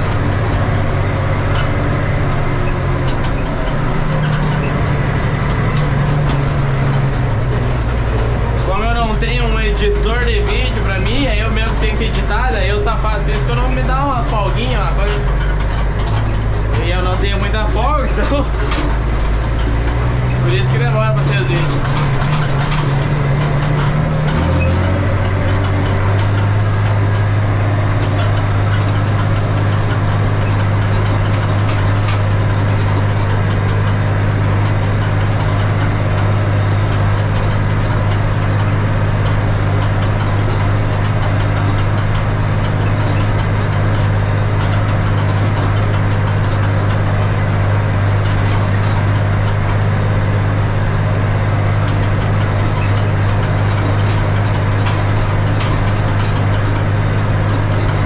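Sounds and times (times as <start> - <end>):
tractor diesel engine running: 0.0 - 58.0.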